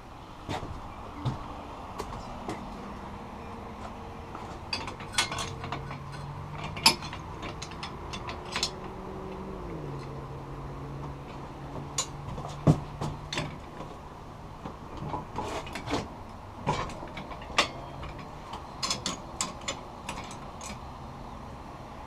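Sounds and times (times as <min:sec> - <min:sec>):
steady low hum: 0:00.0 - 0:22.0
metal clanks and knocks: 0:03.8 - 0:09.0, 0:11.0 - 0:14.0, 0:14.6 - 0:20.8.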